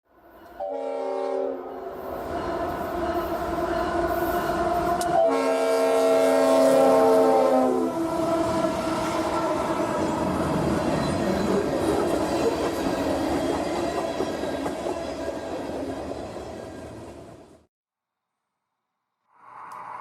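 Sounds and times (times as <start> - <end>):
locomotive horn blasts: 0.5 - 2.0, 5.0 - 9.7.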